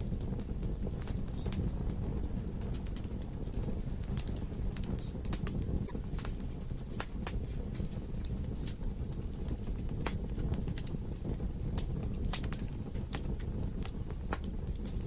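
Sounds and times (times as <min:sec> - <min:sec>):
fire rumbling: 0:00.0 - 0:15.0
logs crackling and popping: 0:00.0 - 0:15.0.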